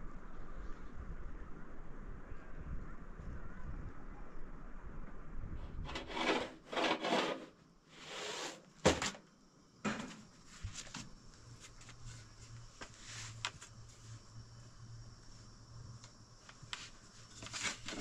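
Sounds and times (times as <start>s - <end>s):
scraping strokes: 5.9s - 8.7s.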